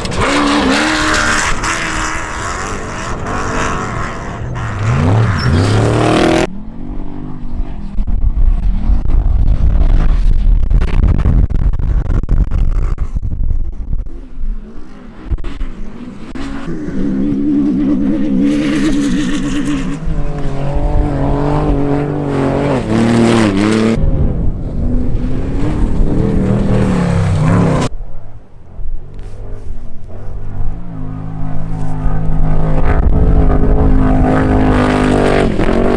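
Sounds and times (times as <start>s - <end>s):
engine revving hard: 0.0s - 6.5s, 16.3s - 24.2s, 24.8s - 27.9s, 30.1s - 35.9s.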